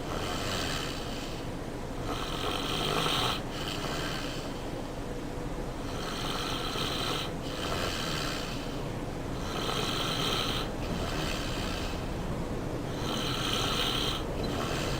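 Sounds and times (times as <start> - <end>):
person snoring: 0.1 - 1.4, 2.0 - 4.5, 5.9 - 8.7, 9.4 - 12.0, 12.9 - 14.9.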